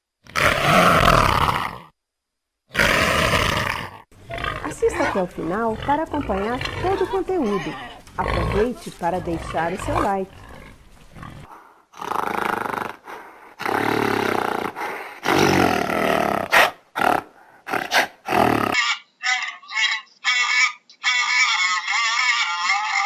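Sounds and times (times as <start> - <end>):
large animal roaring and growling: 0.2 - 1.9, 2.7 - 18.8.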